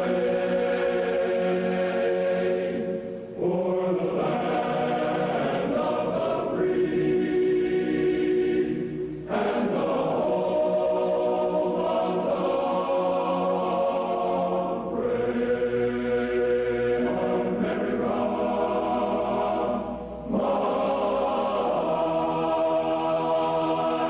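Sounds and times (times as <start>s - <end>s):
choir singing held chords: 0.0s - 24.0s.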